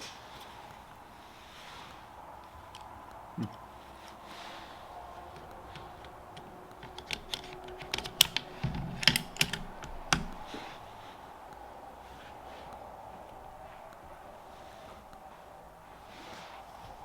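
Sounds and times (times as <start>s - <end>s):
rifle bolt metallic clicks: 5.4s - 10.5s.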